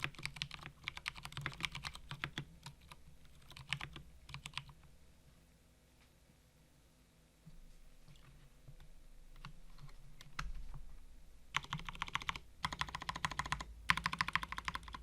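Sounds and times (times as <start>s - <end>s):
mechanical keyboard typing: 0.0s - 4.8s, 11.6s - 15.0s.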